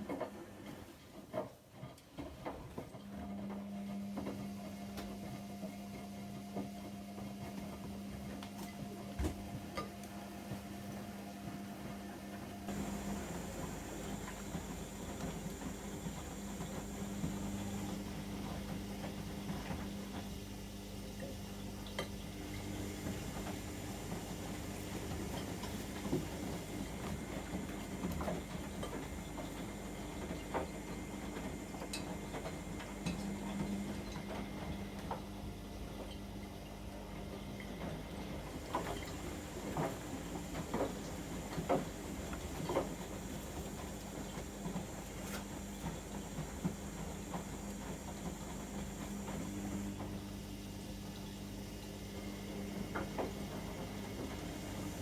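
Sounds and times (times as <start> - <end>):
washing machine motor humming: 0.0 - 55.0
water and laundry splashing: 12.6 - 55.0.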